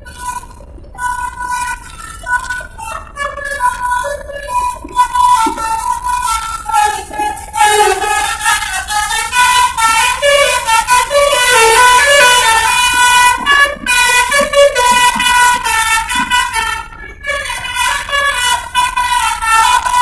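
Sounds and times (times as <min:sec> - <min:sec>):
multi-tone bus horn melody: 0:00.0 - 0:20.0.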